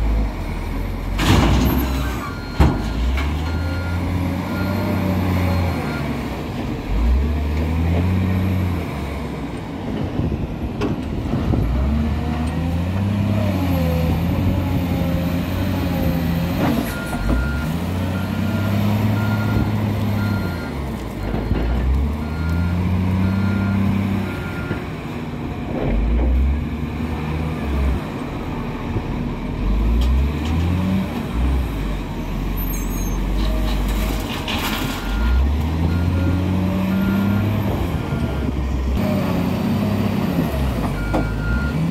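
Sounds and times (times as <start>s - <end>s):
diesel engine revving: 0.0s - 9.4s, 11.1s - 25.1s, 25.9s - 41.9s
reversing alarm beeping: 2.1s - 6.0s, 16.9s - 21.6s.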